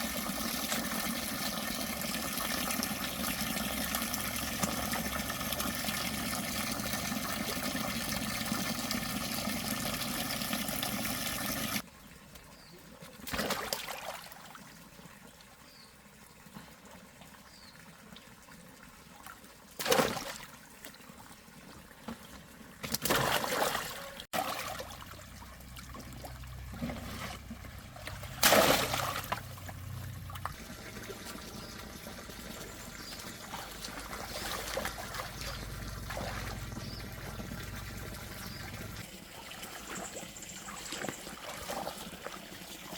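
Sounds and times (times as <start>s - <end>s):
water running: 0.0s - 11.8s, 24.0s - 42.9s.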